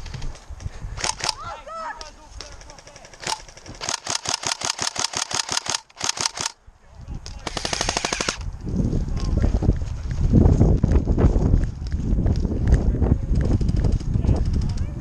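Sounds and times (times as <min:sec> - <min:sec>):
airsoft gun firing rapidly: 0:02.5 - 0:06.6, 0:07.4 - 0:08.4.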